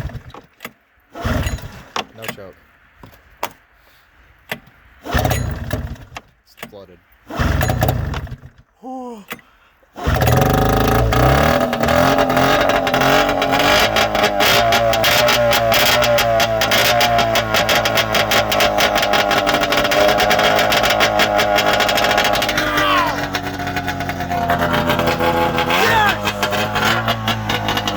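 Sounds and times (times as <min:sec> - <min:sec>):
snowmobile engine running loud: 0:10.2 - 0:27.9.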